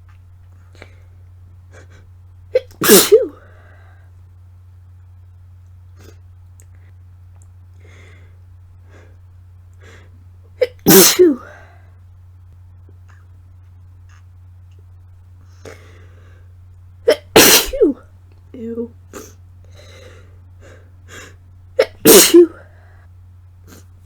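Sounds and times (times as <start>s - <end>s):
steady low hum: 0.0s - 24.0s
woman sneezing: 2.6s - 3.4s, 10.6s - 11.6s, 17.1s - 18.0s, 21.8s - 22.6s
faint sniffs and breaths: 15.4s - 16.6s, 22.6s - 24.0s.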